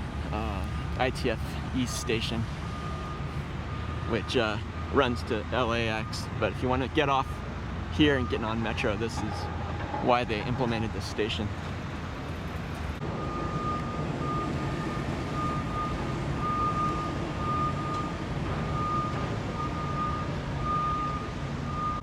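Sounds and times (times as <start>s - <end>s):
engine and traffic rumble: 0.0s - 22.0s
reversing alarm beeping: 1.8s - 7.4s, 8.0s - 10.1s, 13.2s - 22.0s.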